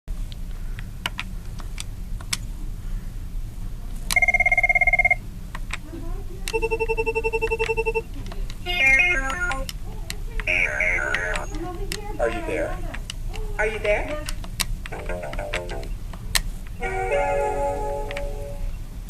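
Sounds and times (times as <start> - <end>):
lower pulsing phone ring: 4.2 - 5.2, 6.5 - 8.1
warbling electronic phone ring: 4.2 - 5.2, 6.5 - 8.1, 8.7 - 9.6, 10.5 - 11.5
sharp clicks: 9.2 - 12.0, 13.8 - 16.5.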